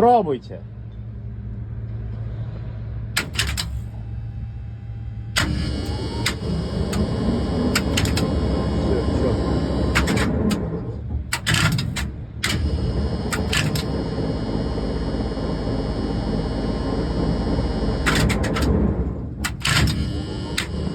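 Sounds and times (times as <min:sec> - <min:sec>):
crane hoist electric hum: 0:00.0 - 0:20.9
contactors clacking: 0:03.2 - 0:03.9, 0:05.4 - 0:14.4, 0:18.0 - 0:20.9.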